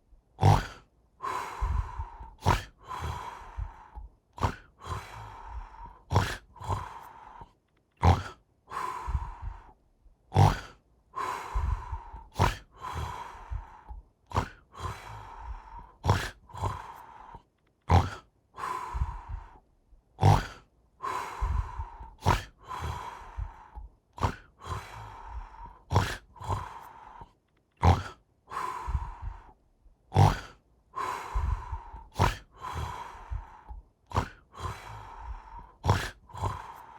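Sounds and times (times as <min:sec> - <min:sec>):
rasping snores with snorts: 0:00.4 - 0:19.6, 0:20.2 - 0:36.9.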